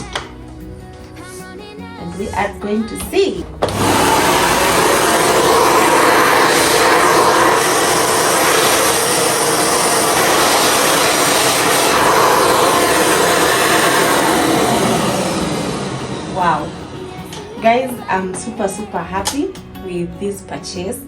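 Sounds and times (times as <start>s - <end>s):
vacuum cleaner running: 3.6s - 19.2s.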